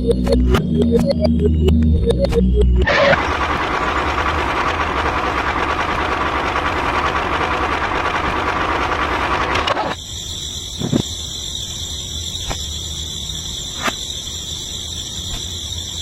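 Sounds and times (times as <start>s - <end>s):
small engine with knocking rattle: 2.9s - 10.0s.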